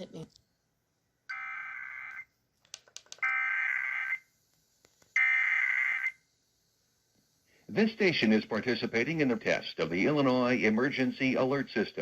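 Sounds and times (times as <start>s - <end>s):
harsh digital data tones: 1.3s - 2.3s.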